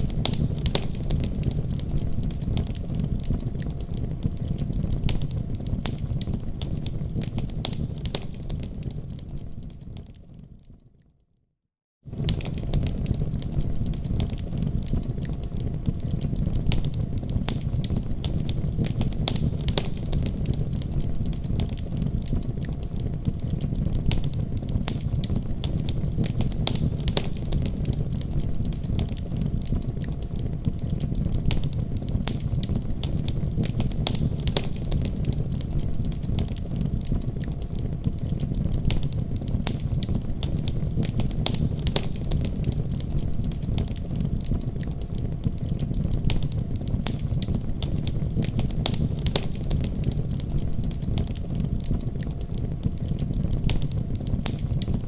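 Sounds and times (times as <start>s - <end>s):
fire crackling and popping: 0.0s - 11.0s, 12.1s - 55.0s
low rumble of flames: 0.0s - 11.0s, 12.0s - 55.0s.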